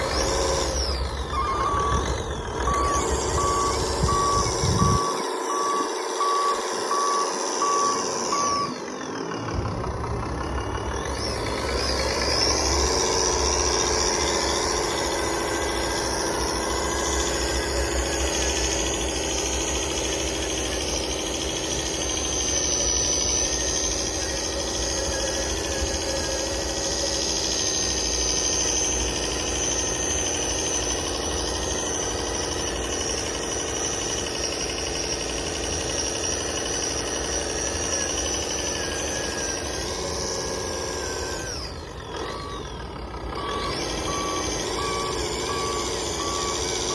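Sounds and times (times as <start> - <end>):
reverse beeping: 0.0 - 14.4, 38.0 - 46.9
whine sliding in pitch: 0.0 - 16.8
toy truck motor and gears: 0.0 - 46.9.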